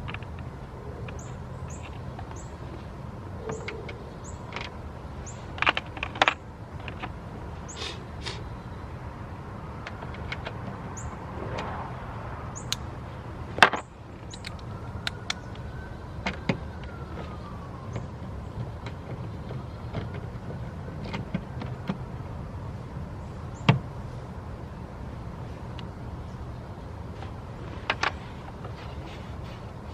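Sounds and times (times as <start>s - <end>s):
faint siren: 14.0s - 21.8s.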